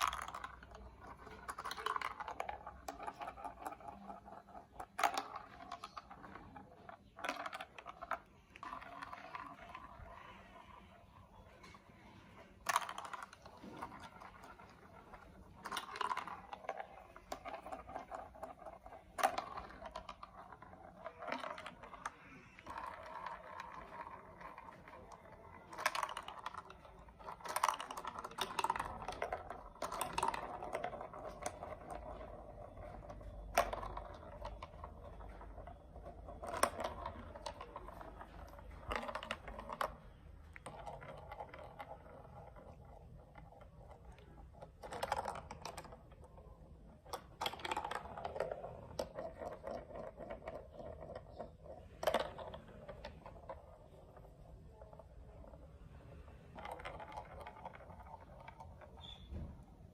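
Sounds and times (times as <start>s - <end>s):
plastic pieces clicking and clattering: 0.0s - 10.8s, 12.5s - 55.6s.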